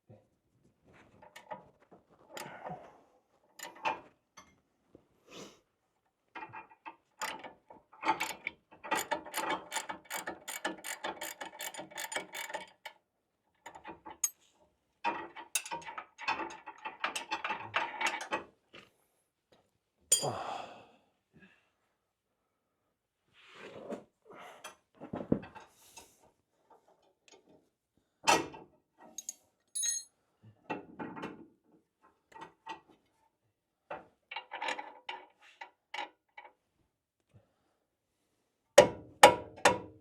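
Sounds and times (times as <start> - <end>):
ratchet wrench clicking: 9.0 - 12.7.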